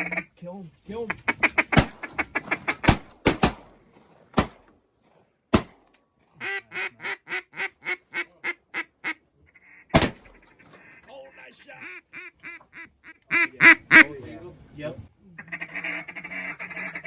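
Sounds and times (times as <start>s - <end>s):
duck quacks: 0.0s - 0.3s, 1.1s - 3.0s, 6.4s - 10.0s, 10.6s - 14.2s, 15.3s - 17.0s
shotgun blasts: 1.7s - 5.9s, 9.9s - 10.5s.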